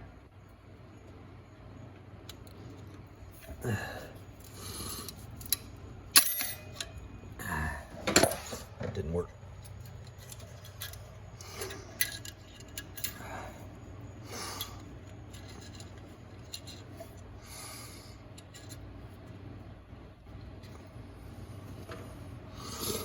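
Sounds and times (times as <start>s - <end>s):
steady low hum: 0.0s - 23.0s
light metal clicks and scrapes: 8.1s - 13.4s, 14.6s - 17.3s, 18.2s - 19.4s.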